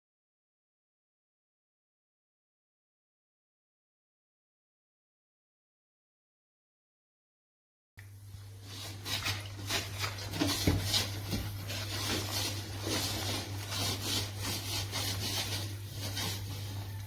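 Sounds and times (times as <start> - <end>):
rhythmic rubbing or scraping: 8.7 - 17.0.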